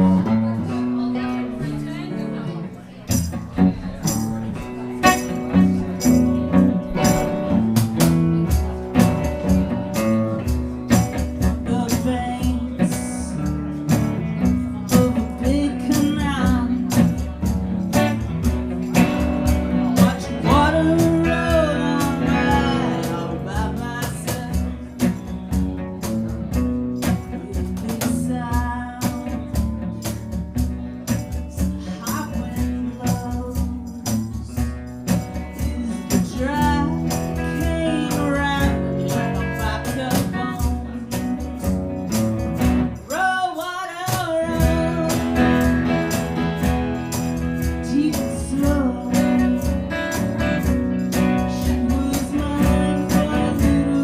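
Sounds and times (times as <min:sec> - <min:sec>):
strummed guitars: 0:00.0 - 0:54.0
person singing: 0:11.2 - 0:13.4, 0:19.8 - 0:25.1, 0:27.0 - 0:29.4, 0:31.5 - 0:34.6, 0:35.4 - 0:41.2, 0:43.0 - 0:46.5, 0:47.7 - 0:50.5, 0:51.1 - 0:54.0.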